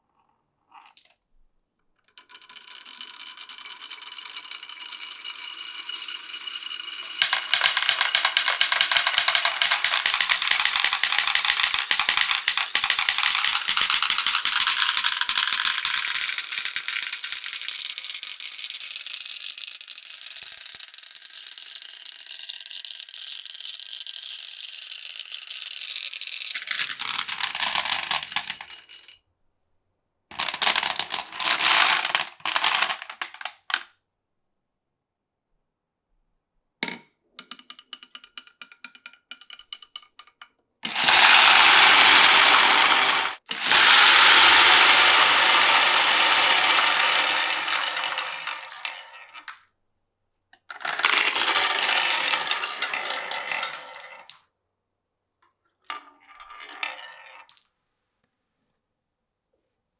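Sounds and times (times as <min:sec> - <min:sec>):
glass marbles rolling down wooden run: 0:02.2 - 0:29.2, 0:30.3 - 0:33.9, 0:40.8 - 0:49.6, 0:50.7 - 0:54.4, 0:55.9 - 0:57.7.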